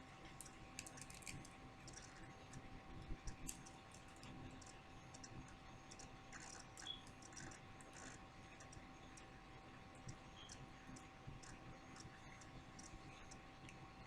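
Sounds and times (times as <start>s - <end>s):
faint steady hum: 0.0s - 14.0s
light clicks and taps: 0.3s - 9.3s, 10.0s - 13.8s.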